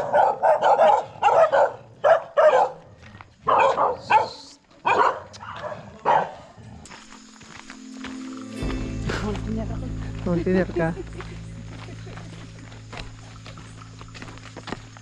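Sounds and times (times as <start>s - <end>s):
dog barking: 0.0s - 6.5s.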